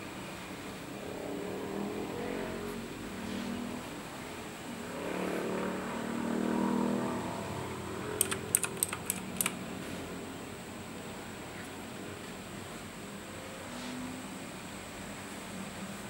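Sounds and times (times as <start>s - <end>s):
mechanical keyboard key clicks: 8.2s - 9.6s.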